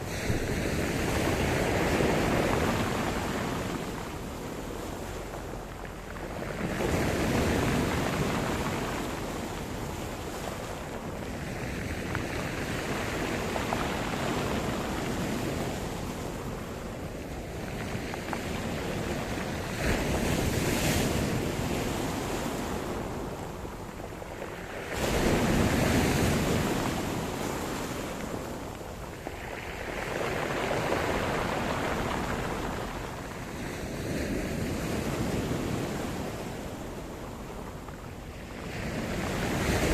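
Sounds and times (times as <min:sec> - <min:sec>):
waves breaking: 0:00.0 - 0:39.9.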